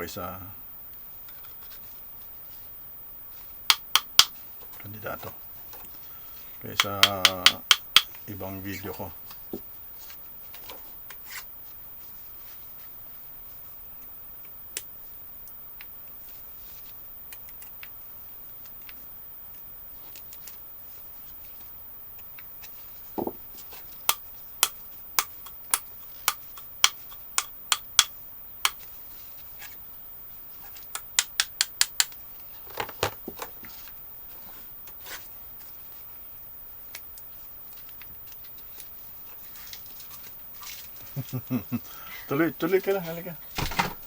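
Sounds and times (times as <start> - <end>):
sharp clicks: 3.7 - 4.3, 6.7 - 8.2, 24.1 - 28.8, 30.9 - 32.2.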